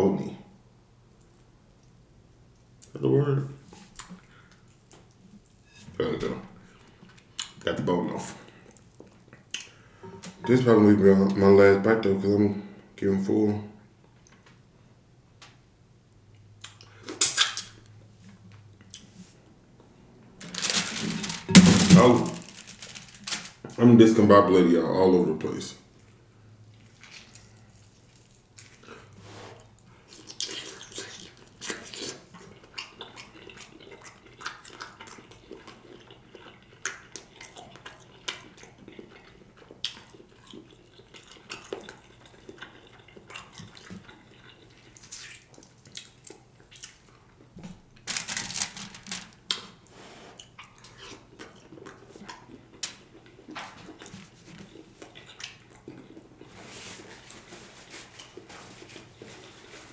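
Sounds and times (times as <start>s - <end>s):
man chewing meat: 26.0s - 47.9s, 49.4s - 57.4s.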